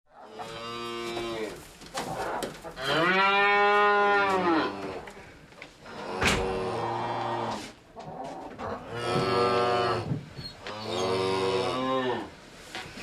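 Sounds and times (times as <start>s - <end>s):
cows mooing: 2.8s - 5.1s, 8.8s - 10.1s, 10.7s - 12.4s.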